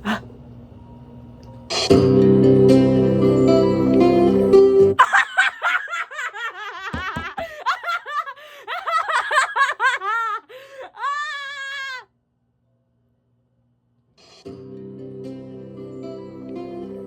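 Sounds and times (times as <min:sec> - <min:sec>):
background music: 0:00.0 - 0:05.0, 0:14.5 - 0:17.0.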